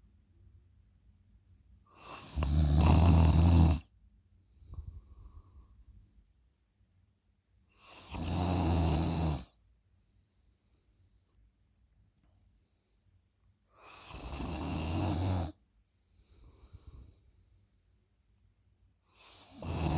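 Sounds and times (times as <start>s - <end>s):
person snoring loudly: 2.0s - 3.9s, 7.9s - 9.5s, 14.0s - 15.6s, 19.4s - 19.9s.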